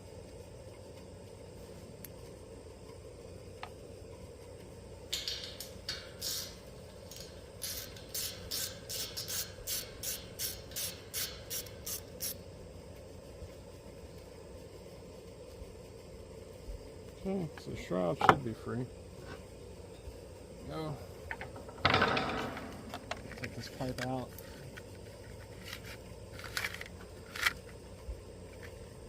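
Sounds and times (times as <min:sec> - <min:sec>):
ratchet wrench clicking: 0:05.1 - 0:12.4.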